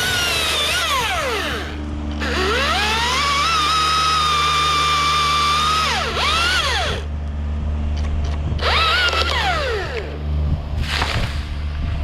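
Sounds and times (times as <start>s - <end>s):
chainsaw whining and revving: 0.0s - 7.1s, 8.6s - 10.3s.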